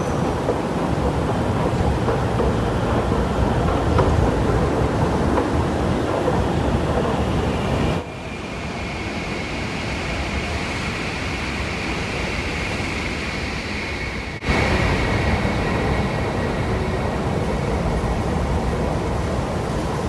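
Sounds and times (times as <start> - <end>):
escalator mechanical rumble: 0.0 - 8.0.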